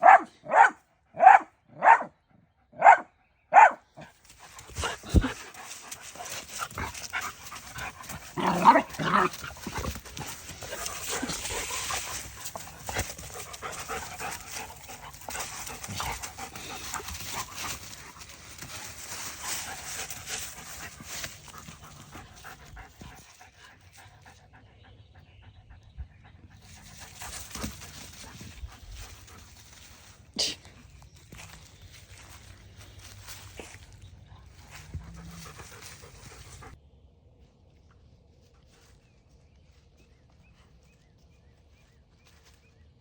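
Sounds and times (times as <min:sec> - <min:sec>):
dog panting: 0:04.3 - 0:08.6, 0:09.2 - 0:28.3.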